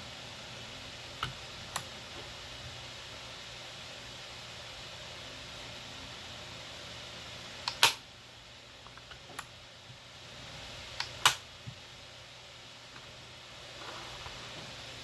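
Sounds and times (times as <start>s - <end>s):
steady hiss: 0.0s - 15.0s
sharp clicks: 7.6s - 8.0s.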